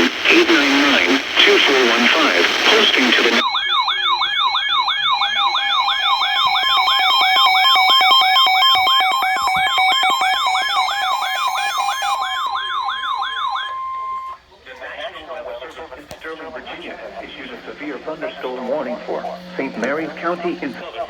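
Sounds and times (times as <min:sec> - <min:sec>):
steady two-tone signal: 0:00.0 - 0:14.5, 0:16.3 - 0:21.0
emergency alert siren wail: 0:03.4 - 0:14.4, 0:16.7 - 0:21.0.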